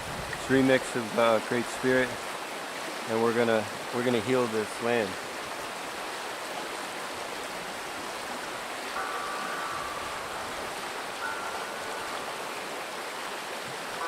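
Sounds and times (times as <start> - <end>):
rushing water: 0.0 - 14.0
background music: 9.0 - 14.0.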